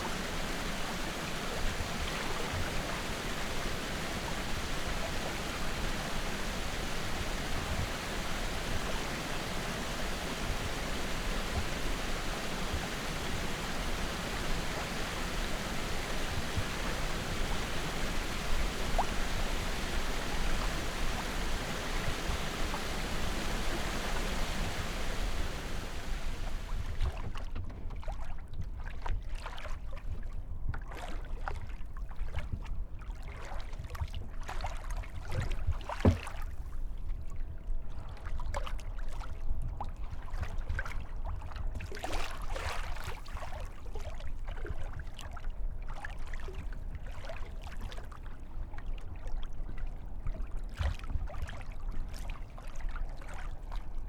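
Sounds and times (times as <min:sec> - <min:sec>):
constant low rumble: 0:00.0 - 0:27.2
water lapping against kayak: 0:00.0 - 0:54.0.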